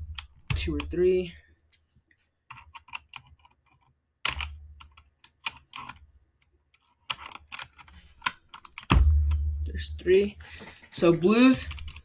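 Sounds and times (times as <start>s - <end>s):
mechanical keyboard clicking: 11.6s - 12.0s.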